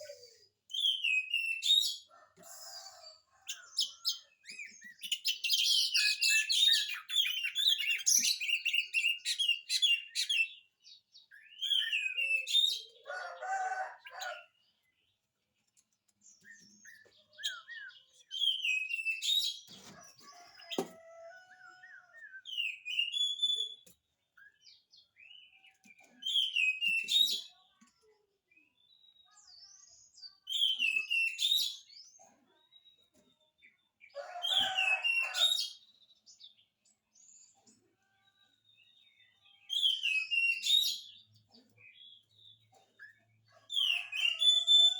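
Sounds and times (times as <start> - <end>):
bird singing: 0.0 - 14.4, 30.3 - 32.0, 38.4 - 44.9.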